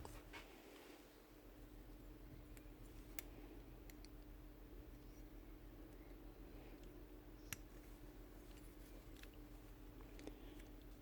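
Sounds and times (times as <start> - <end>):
faint steady hum: 0.0 - 11.0
light clicks of sander parts: 2.5 - 4.3, 5.9 - 7.7, 10.0 - 11.0.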